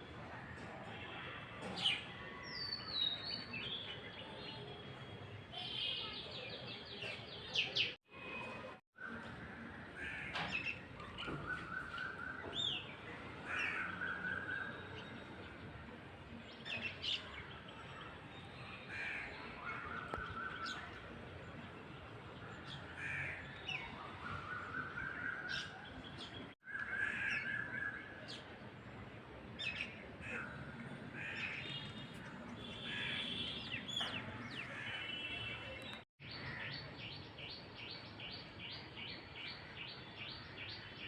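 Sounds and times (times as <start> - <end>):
birds chirping and whistling: 10.5 - 12.9, 23.6 - 28.3.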